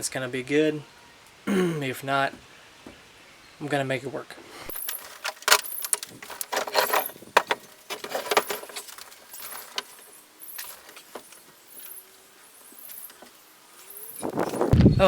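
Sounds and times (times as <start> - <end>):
metal hardware and boards clattering: 4.8 - 9.9.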